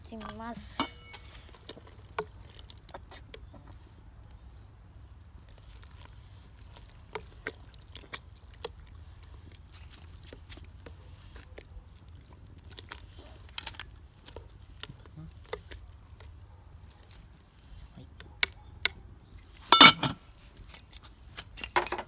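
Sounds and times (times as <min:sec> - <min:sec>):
utensil clicking in a pot: 0:00.1 - 0:03.6.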